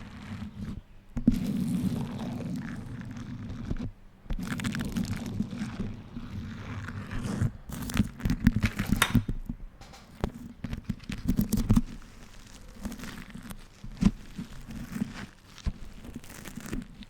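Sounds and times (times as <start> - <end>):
wax wrap crinkling: 4.4 - 9.0, 10.2 - 17.0.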